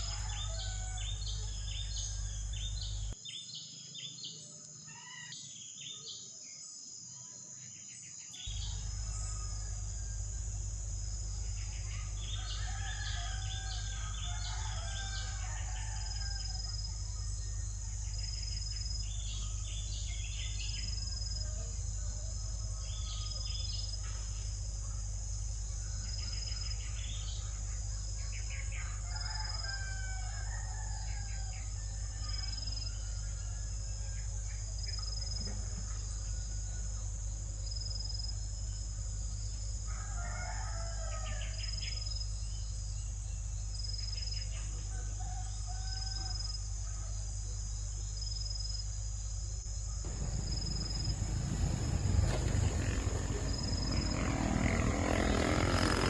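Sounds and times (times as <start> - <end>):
high insect drone: 0.0 - 3.2, 8.4 - 56.0
low constant hum: 0.0 - 3.2, 8.4 - 40.2, 40.9 - 56.0
birds chirping: 0.0 - 5.4, 8.5 - 29.8, 49.6 - 56.0.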